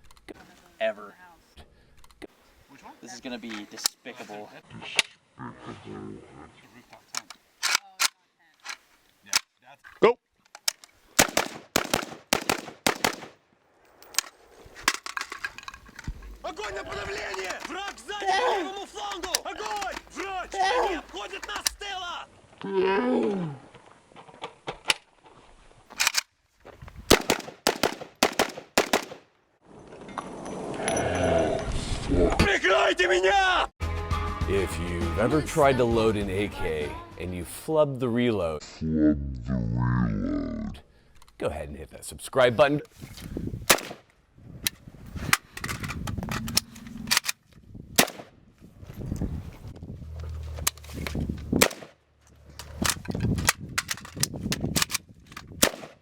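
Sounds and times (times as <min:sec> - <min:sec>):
semi-automatic rifle shots: 0:11.2 - 0:13.4, 0:27.1 - 0:29.3, 0:43.7 - 0:44.0, 0:48.0 - 0:48.4, 0:51.6 - 0:52.0, 0:55.6 - 0:56.0.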